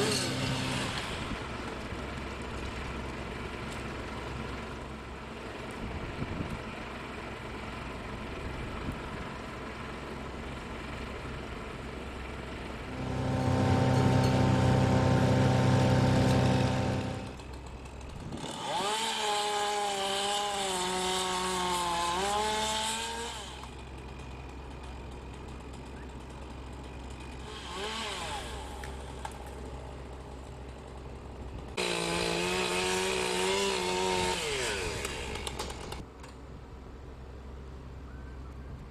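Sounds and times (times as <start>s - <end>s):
chainsaw revving: 0.0s - 1.5s, 12.9s - 36.1s
steady engine drone: 0.0s - 18.8s, 23.0s - 38.9s
louder engine running steadily: 0.0s - 18.9s, 23.3s - 36.1s.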